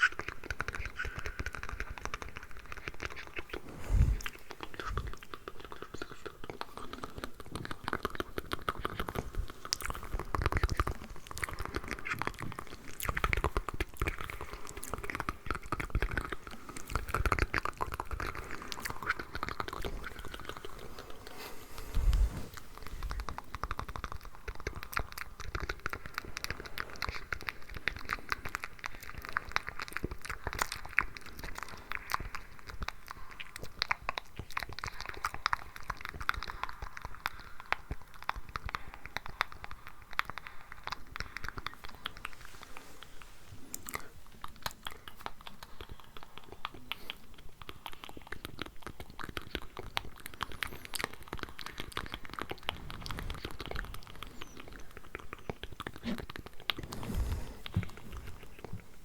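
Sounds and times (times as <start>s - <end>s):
wet mouth clicks and smacks: 0.0s - 21.1s, 43.7s - 56.8s.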